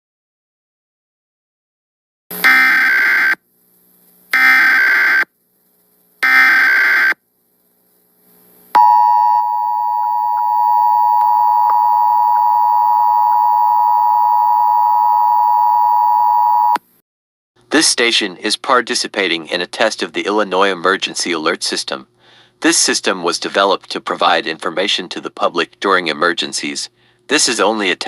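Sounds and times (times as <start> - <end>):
buzzing data tone bursts: 2.3 - 3.4, 4.3 - 5.3, 6.2 - 7.2, 8.8 - 16.8
two-tone alarm: 2.3 - 3.4, 4.3 - 5.3, 6.2 - 7.2, 8.8 - 16.8.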